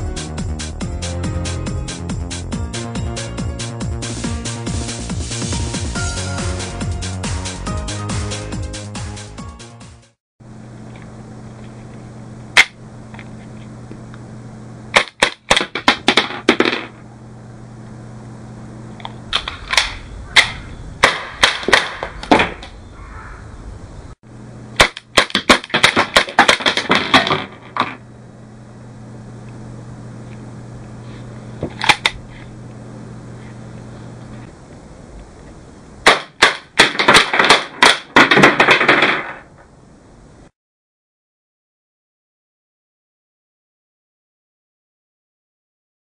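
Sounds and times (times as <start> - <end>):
low hum: 10.4 - 25.2, 26.0 - 36.1
cap pistol shots: 19.7 - 22.6, 36.1 - 38.9.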